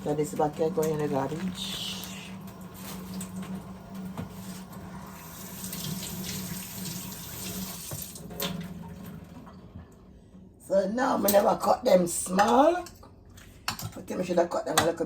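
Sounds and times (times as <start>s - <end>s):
tap running water into sink: 0.3s - 9.6s.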